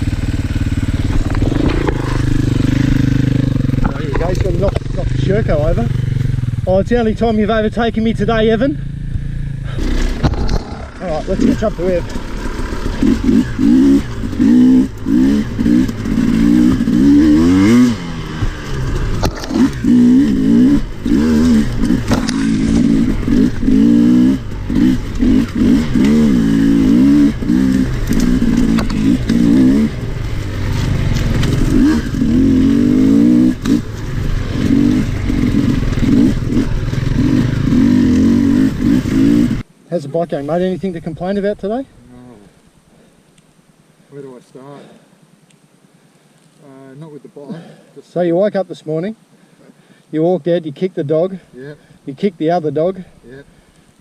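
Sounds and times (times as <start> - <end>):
dirt bike engine revving: 0.0 - 39.7.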